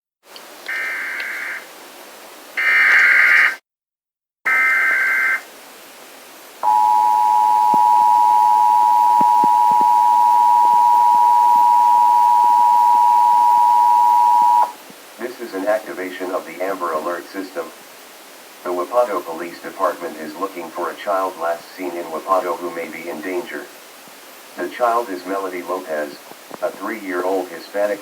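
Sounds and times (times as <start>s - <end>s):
shrill digital data tones: 6.6s - 14.8s
steady two-tone attention signal: 6.6s - 14.8s.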